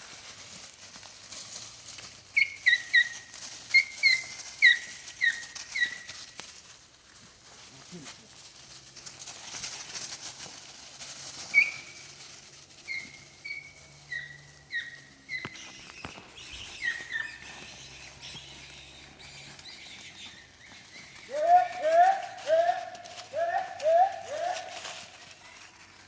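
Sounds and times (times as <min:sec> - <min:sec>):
outdoor background noise: 0:00.0 - 0:26.0
high chirping calls: 0:02.4 - 0:06.3, 0:11.5 - 0:12.1, 0:12.8 - 0:25.0.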